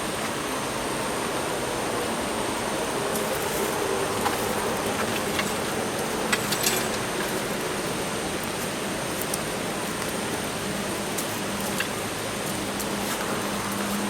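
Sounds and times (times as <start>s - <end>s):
steady rushing noise: 0.0s - 14.0s
sharp crackles and clicks: 3.2s - 14.0s.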